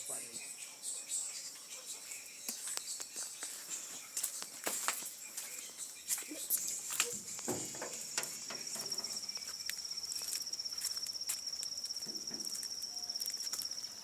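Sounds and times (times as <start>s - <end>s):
cricket trilling: 0.0s - 14.0s
faint clicks and rustles: 6.5s - 14.0s.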